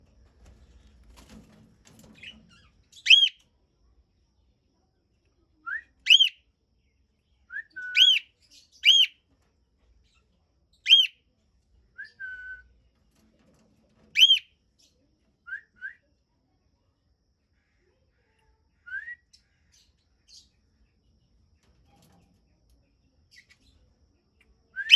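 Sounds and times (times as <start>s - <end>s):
cockatiel whistled calls: 3.0s - 3.4s, 5.7s - 6.4s, 7.5s - 9.1s, 10.9s - 11.1s, 14.2s - 14.4s.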